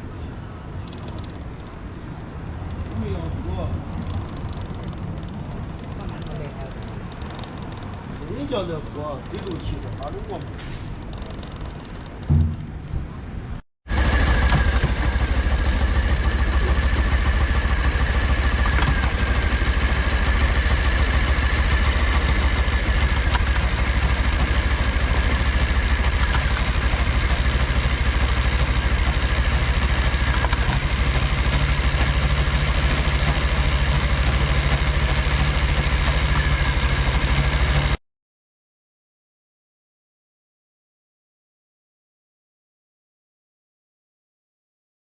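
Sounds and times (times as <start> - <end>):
motorcycle engine idling: 13.9 - 38.0.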